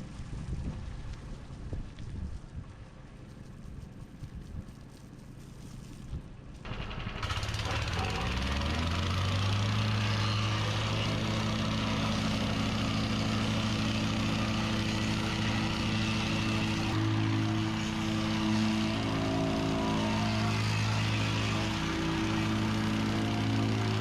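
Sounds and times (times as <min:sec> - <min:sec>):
plate compactor engine revving: 0:06.7 - 0:24.0.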